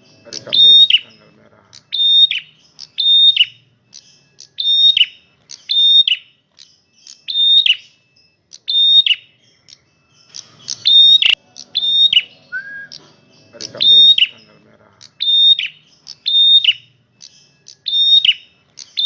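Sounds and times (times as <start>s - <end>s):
bird calling high notes: 0.0s - 19.0s.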